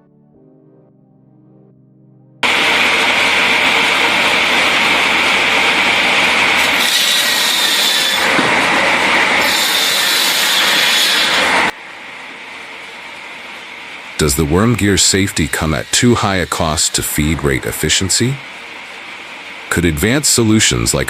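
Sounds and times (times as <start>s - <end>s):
machine shredding wood: 2.4s - 11.8s.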